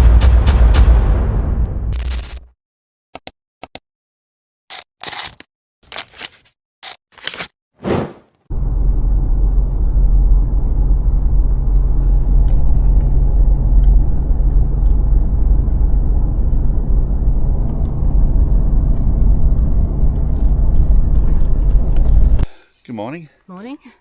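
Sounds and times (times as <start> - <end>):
vehicle rumble: 8.5 - 22.5.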